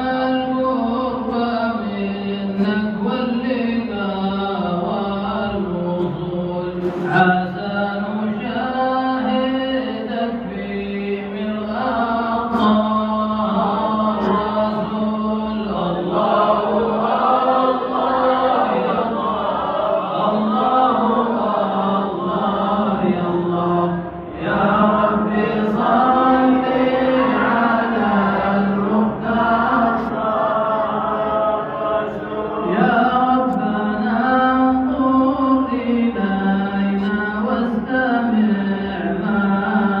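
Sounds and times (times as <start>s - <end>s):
man chanting devotional song: 0.0s - 18.6s.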